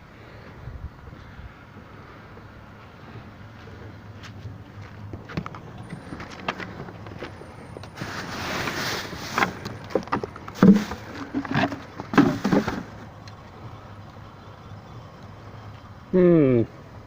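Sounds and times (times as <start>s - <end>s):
debris rustling in skip bin: 8.0s - 13.1s
scrap knocking and clattering: 8.1s - 13.0s.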